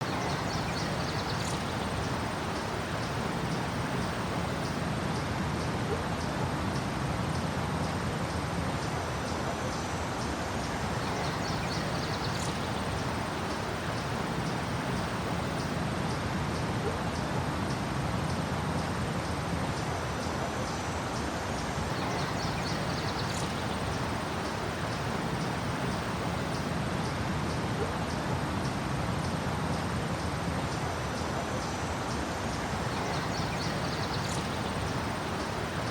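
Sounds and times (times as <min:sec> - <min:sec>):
small birds chirping: 0:00.0 - 0:04.8, 0:10.8 - 0:15.8, 0:21.9 - 0:26.7, 0:32.8 - 0:35.9
loud high bird calls: 0:21.9 - 0:26.7.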